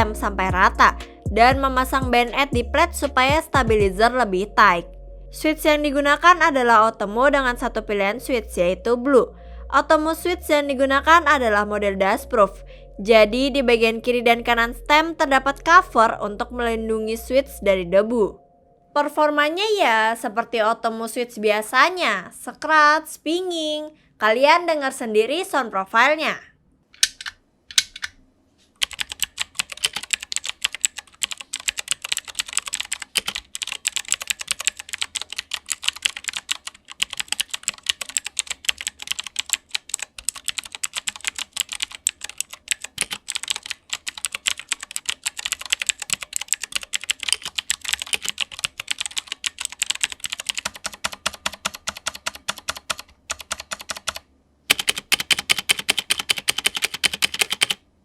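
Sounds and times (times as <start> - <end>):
mechanical keyboard typing: 27.0 - 28.1, 28.8 - 57.8.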